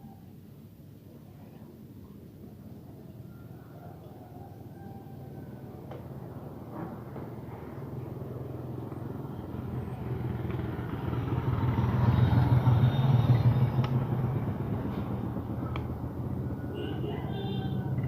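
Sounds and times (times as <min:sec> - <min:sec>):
passing vehicle engine: 0:05.6 - 0:18.0.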